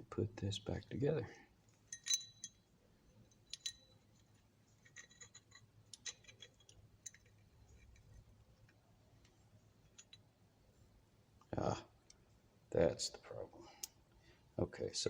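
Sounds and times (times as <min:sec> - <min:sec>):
small metal parts clicking: 0:01.7 - 0:08.8.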